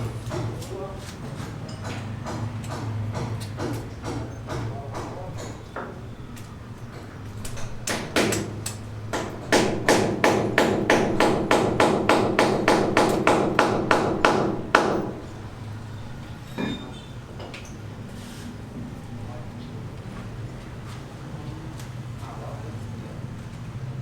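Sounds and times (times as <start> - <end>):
hammer blows ringing: 7.6 - 15.6.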